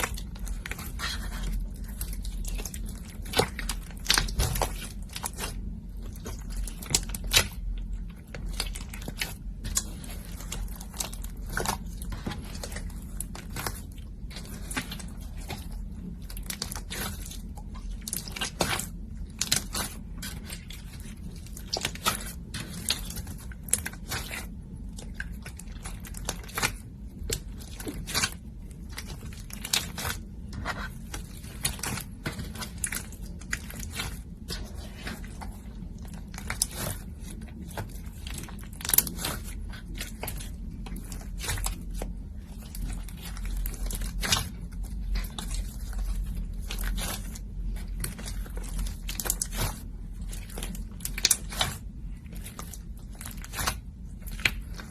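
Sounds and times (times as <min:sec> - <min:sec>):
hands squishing slime: 0:00.0 - 0:54.9
steady low hum: 0:00.0 - 0:54.9.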